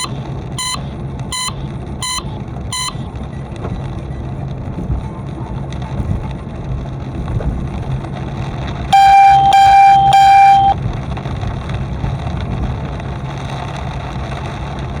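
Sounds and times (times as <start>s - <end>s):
car horn honking: 0.0s - 3.0s, 8.9s - 10.8s
car driving rumble: 0.0s - 15.0s.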